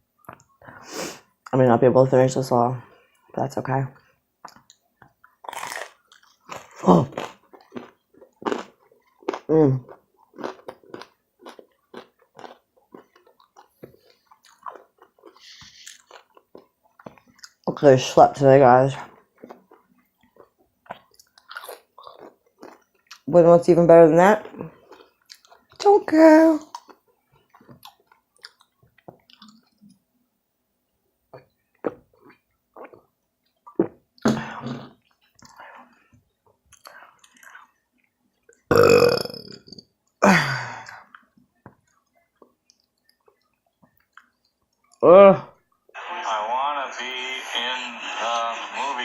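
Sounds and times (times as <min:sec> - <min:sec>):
person chewing food: 0:04.0 - 0:17.7, 0:19.1 - 0:23.3, 0:24.4 - 0:25.8, 0:26.6 - 0:30.1, 0:31.3 - 0:34.2, 0:34.9 - 0:40.2, 0:40.8 - 0:45.0
crunchy snack chewing: 0:04.5 - 0:17.6, 0:19.4 - 0:23.2.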